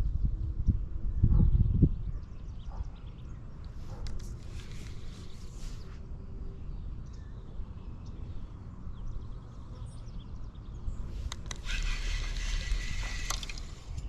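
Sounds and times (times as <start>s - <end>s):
wind on microphone: 0.0s - 2.8s
hissing rustle: 3.8s - 6.0s
sharp clicks: 11.2s - 14.0s.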